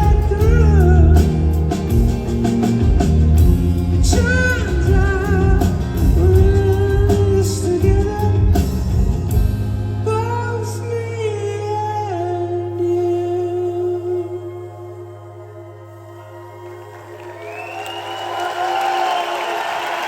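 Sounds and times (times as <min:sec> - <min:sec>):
person singing: 0:00.0 - 0:02.5, 0:03.8 - 0:09.4, 0:10.0 - 0:17.1
live band music: 0:00.0 - 0:14.2
bass: 0:00.0 - 0:18.9.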